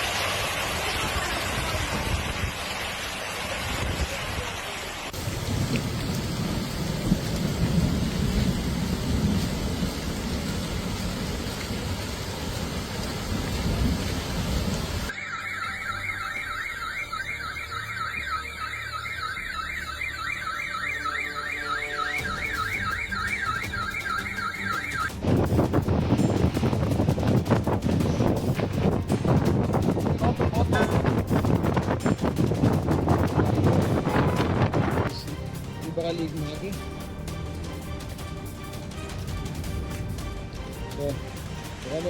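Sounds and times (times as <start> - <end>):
heavy rain pouring: 0.0 - 42.0
car alarm warbling: 15.1 - 25.2.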